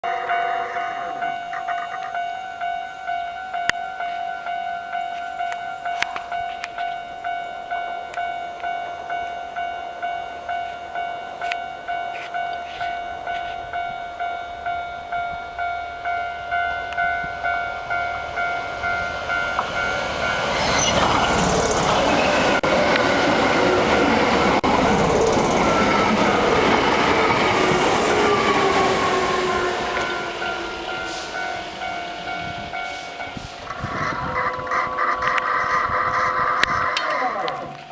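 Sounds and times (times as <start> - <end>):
level-crossing warning bell: 0.0 - 37.0
electric train running: 0.1 - 37.0.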